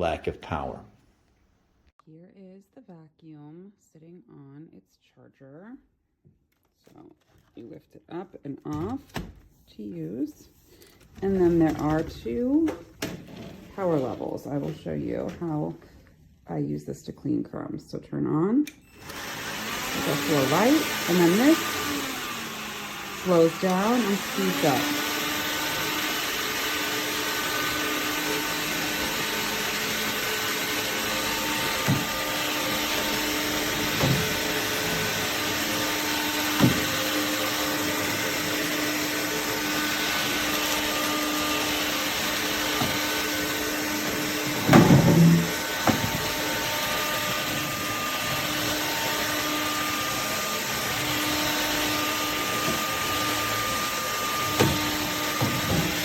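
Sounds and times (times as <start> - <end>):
cordless vacuum running: 10.9 - 15.9, 18.9 - 56.0.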